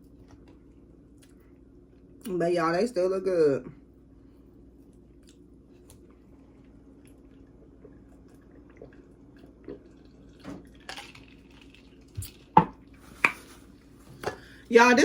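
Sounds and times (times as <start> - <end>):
person sipping a drink: 5.2 - 14.6.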